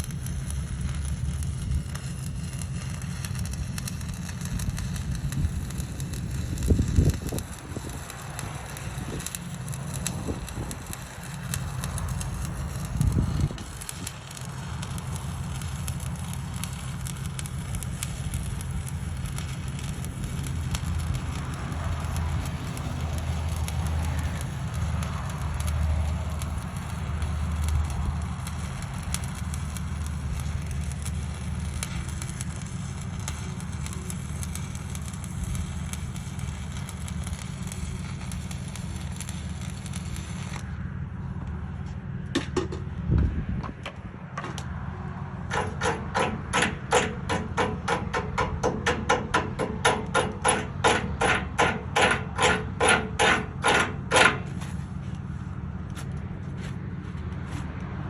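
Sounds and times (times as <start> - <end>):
crackling hiss: 0.0 - 40.7
steady engine hum: 0.0 - 58.0
hammer striking steel: 45.5 - 54.6.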